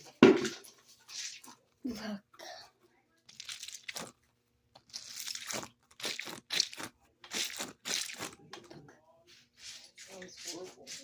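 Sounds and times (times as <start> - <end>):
plastic packaging crinkling: 3.3 - 4.2.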